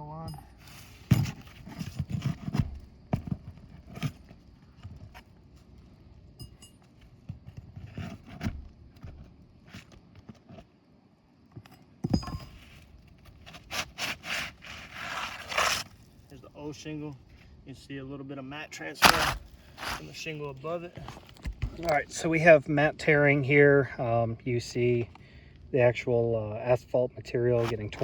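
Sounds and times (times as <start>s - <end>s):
roof shingle scraping: 0.6s - 5.6s, 12.5s - 17.5s, 18.8s - 22.1s.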